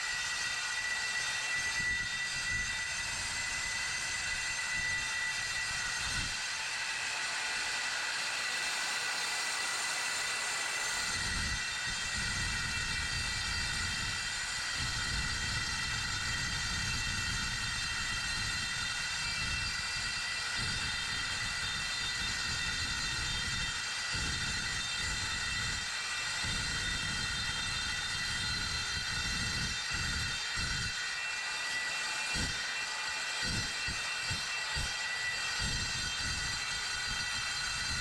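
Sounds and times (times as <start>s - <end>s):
circular saw cutting steel plate: 0.0s - 38.0s.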